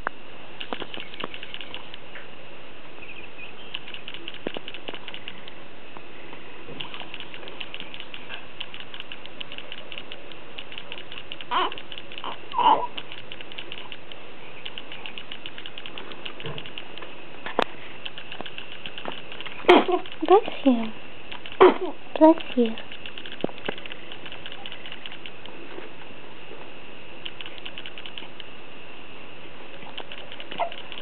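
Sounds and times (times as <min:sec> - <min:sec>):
fast steady clicking: 0:00.6 - 0:02.0, 0:03.7 - 0:05.6, 0:06.8 - 0:26.1, 0:27.2 - 0:28.5, 0:29.8 - 0:31.0.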